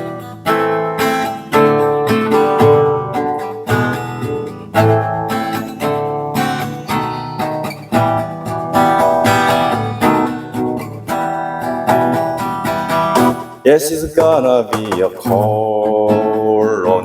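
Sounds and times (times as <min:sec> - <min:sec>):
acoustic guitar playing: 0:00.0 - 0:17.0.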